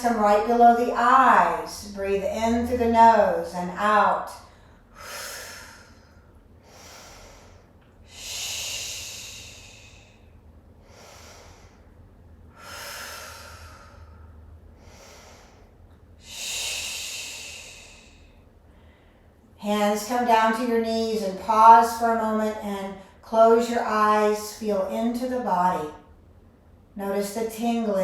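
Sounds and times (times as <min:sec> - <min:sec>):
soft in-breaths: 0:04.4 - 0:19.5.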